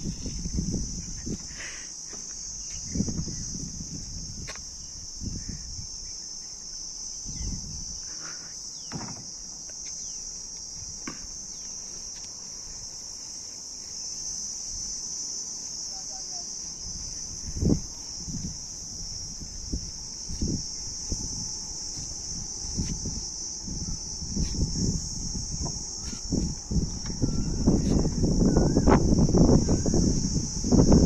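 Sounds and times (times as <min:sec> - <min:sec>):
insects droning: 0:00.0 - 0:31.0.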